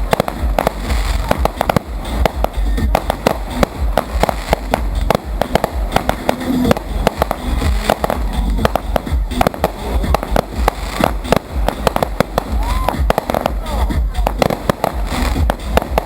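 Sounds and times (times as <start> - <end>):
fireworks crackling bangs: 0.0 - 16.0
steady low rumble: 0.0 - 16.0.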